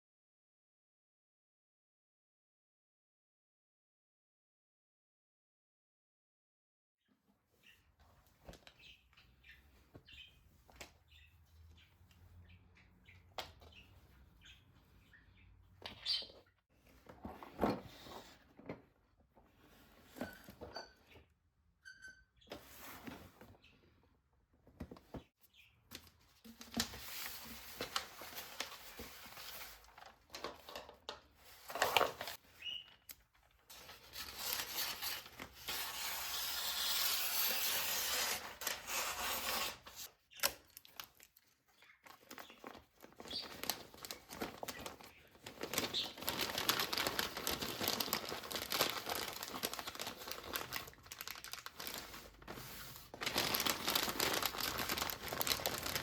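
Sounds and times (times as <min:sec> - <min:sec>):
packaging crinkling: 0:40.4 - 0:56.0.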